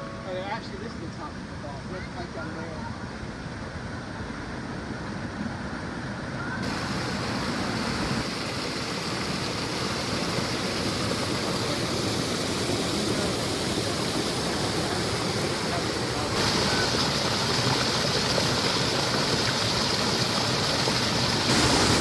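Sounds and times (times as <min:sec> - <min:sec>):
waterfall rushing water: 0:06.6 - 0:22.0.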